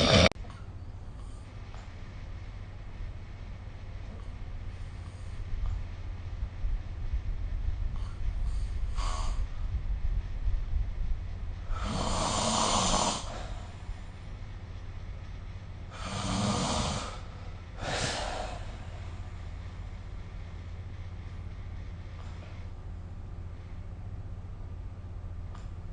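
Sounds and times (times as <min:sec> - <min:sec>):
person snoring: 0:00.0 - 0:00.3, 0:11.7 - 0:13.5, 0:16.0 - 0:17.2
steady low rumble: 0:00.0 - 0:25.9.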